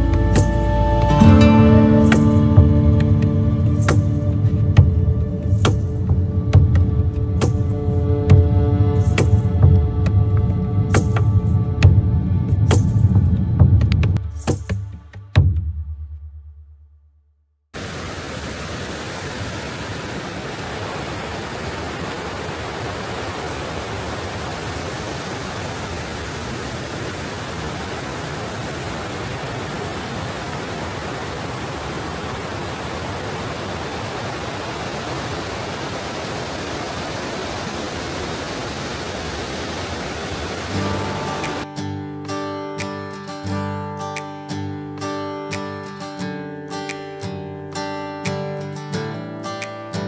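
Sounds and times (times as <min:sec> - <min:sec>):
rushing falling water: 0:00.0 - 0:11.5, 0:17.8 - 0:41.7.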